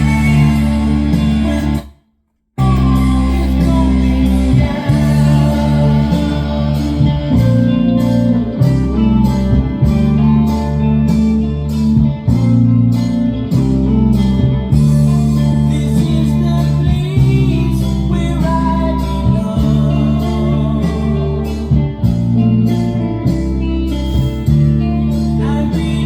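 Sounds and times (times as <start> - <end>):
song with guitar and singing: 0.0 - 1.9, 2.6 - 26.0
regular beat: 0.0 - 2.0, 2.6 - 26.0.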